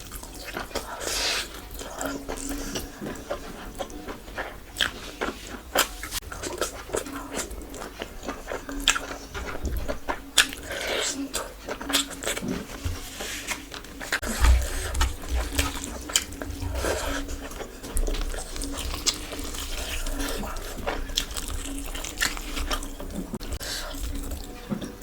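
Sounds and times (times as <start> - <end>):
wet chewing and lip-smacking: 0.0 - 25.0
low thump: 14.2 - 17.4.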